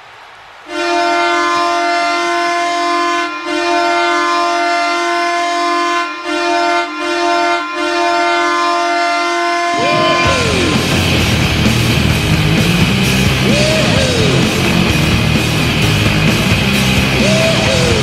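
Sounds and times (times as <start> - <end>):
goal horn blasts: 0.7 - 11.0.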